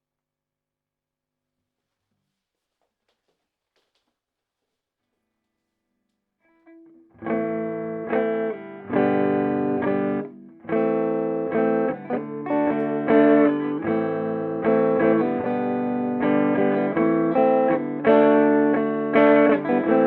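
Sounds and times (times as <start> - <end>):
electric guitar chords: 6.7 - 20.0.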